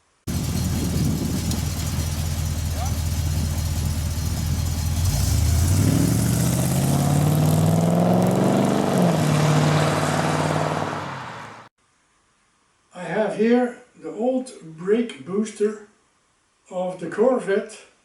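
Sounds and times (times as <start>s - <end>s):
car engine idling and revving: 0.3s - 11.7s.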